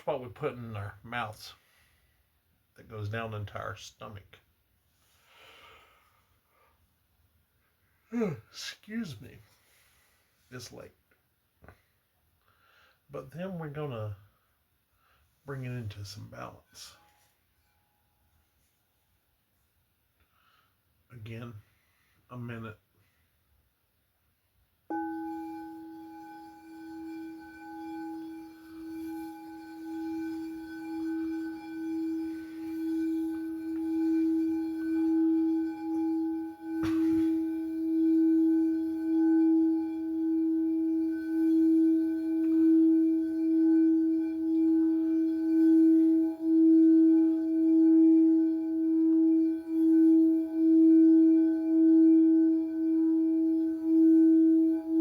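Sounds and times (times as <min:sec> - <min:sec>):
singing bowl ringing: 0:24.9 - 0:55.0.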